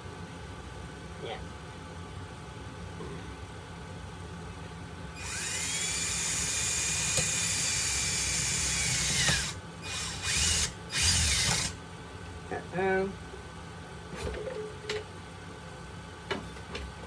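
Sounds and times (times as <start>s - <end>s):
small electric drill drilling: 5.2s - 11.8s.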